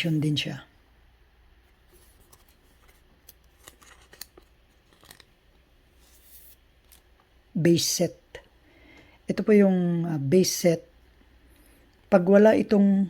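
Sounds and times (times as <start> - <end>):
trading cards clicking and rustling: 2.0 - 5.4.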